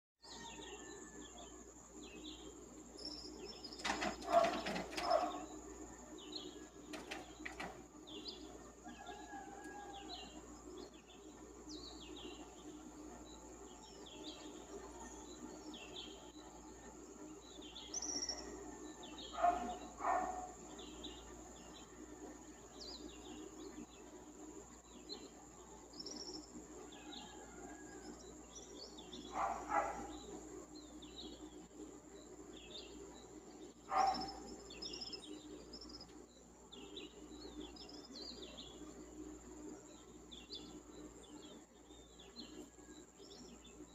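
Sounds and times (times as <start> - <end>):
high insect drone: 0.3 - 43.9
bird chirps: 2.1 - 5.6, 32.5 - 38.8.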